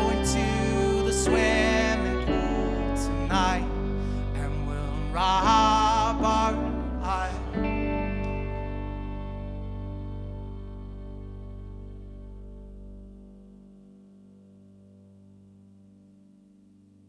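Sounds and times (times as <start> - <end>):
slow indie rock band music: 0.0 - 12.6.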